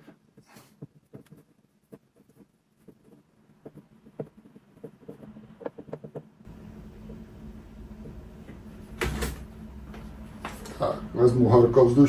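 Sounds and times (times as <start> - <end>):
hot-air gun fan humming: 3.0 - 12.0.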